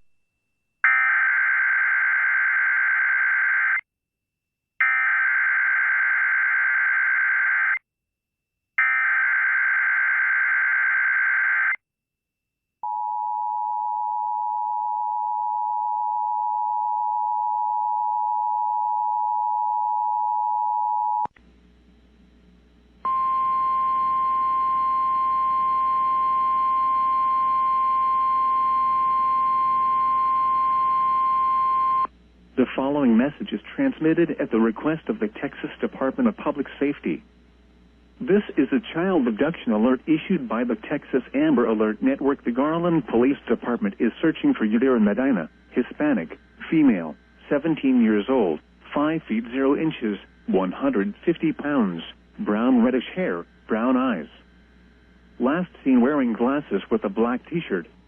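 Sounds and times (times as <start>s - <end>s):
radio static: 38.2s - 54.6s.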